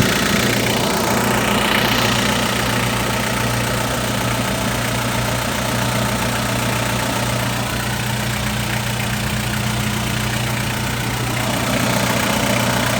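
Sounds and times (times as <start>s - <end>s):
van engine idling: 0.0s - 12.9s.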